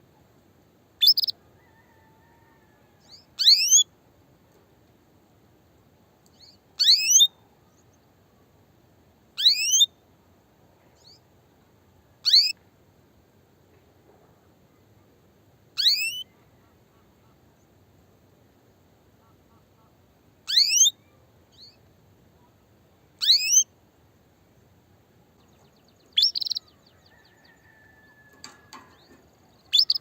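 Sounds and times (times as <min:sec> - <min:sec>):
canary call notes: 0:01.0 - 0:03.8, 0:06.4 - 0:07.3, 0:09.4 - 0:09.9, 0:12.2 - 0:12.6, 0:15.8 - 0:17.4, 0:19.2 - 0:21.8, 0:23.2 - 0:23.7, 0:26.2 - 0:28.9, 0:29.7 - 0:30.0.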